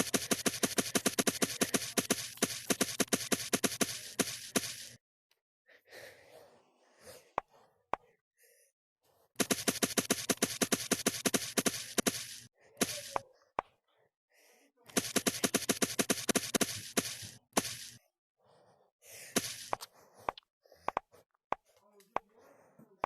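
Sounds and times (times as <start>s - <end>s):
sharp clicks: 0.0s - 5.0s.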